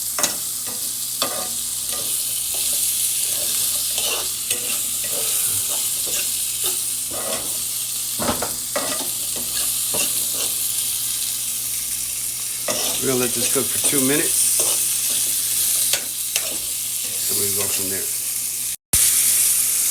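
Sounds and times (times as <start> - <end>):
vegetables sizzling in oil: 0.0 - 19.9
utensil knocking and scraping pan: 0.2 - 7.6, 8.2 - 10.6, 12.7 - 17.8.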